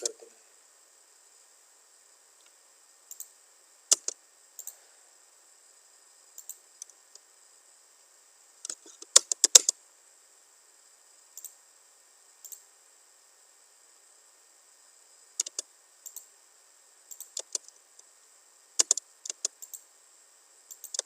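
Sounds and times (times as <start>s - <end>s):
faint steady high hiss: 0.0s - 21.0s
computer mouse clicks: 3.1s - 3.3s, 3.9s - 4.8s, 6.4s - 7.0s, 8.6s - 9.7s, 12.4s - 12.6s, 15.4s - 16.3s, 17.1s - 17.8s, 18.8s - 19.8s, 20.7s - 21.0s.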